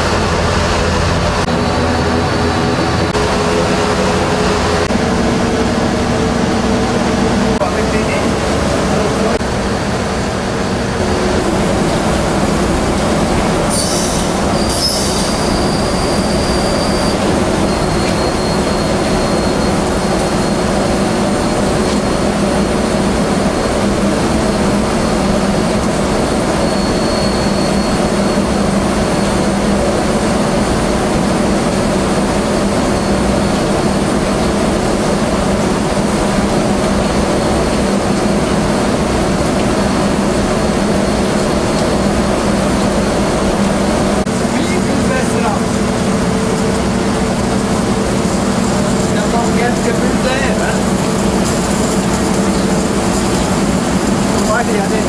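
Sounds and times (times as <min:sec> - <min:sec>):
heavy machinery humming and rumbling: 0:00.0 - 0:55.0
short high squeals: 0:13.7 - 0:20.7, 0:25.4 - 0:28.5.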